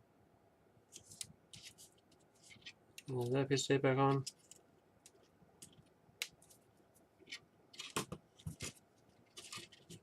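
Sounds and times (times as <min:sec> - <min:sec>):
tape rustling: 0:04.1 - 0:10.0.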